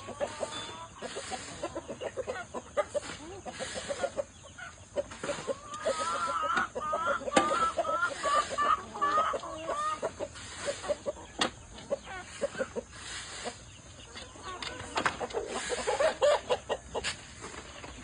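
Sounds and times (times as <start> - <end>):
chickens clucking: 0.0 - 18.0.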